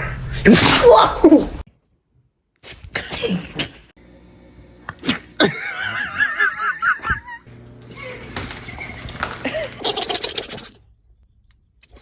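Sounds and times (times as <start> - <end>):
dog sneezing: 0.4 - 1.6.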